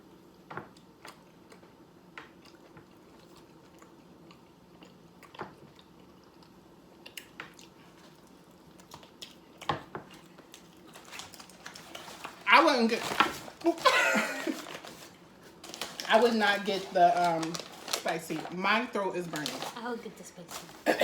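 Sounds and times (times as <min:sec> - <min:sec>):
person chewing food: 0:00.2 - 0:12.4.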